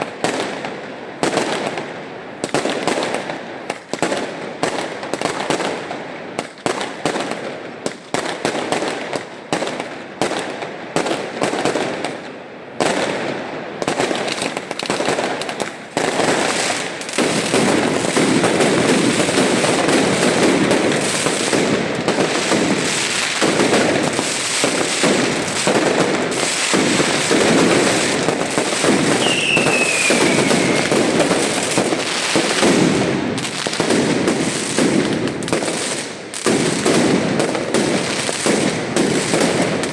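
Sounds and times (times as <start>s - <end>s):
fireworks bangs and crackling: 0.0s - 39.9s
firework falling whistle: 29.0s - 31.7s.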